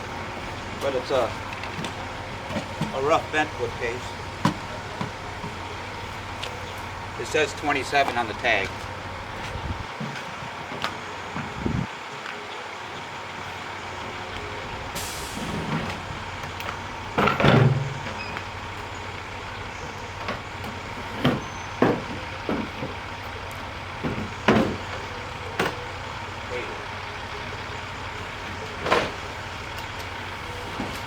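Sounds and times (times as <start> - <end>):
heavy items knocking and clunking: 0.3 - 6.6, 17.1 - 18.4, 20.1 - 25.9, 28.4 - 30.0.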